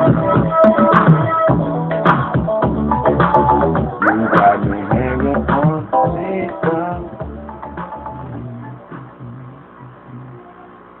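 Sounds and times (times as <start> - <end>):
hip-hop beat bass notes: 0.0 - 10.6
electrical hum: 2.7 - 11.0.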